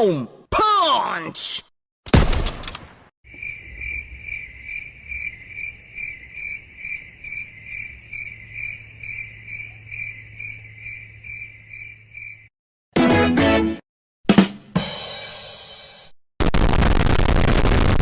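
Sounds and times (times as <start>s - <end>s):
crickets chirping: 3.3s - 12.5s.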